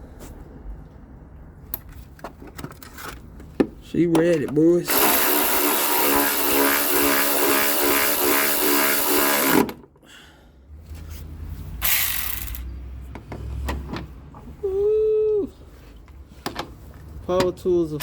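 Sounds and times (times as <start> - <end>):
power ratchet chattering: 4.9 - 9.8, 11.8 - 12.7.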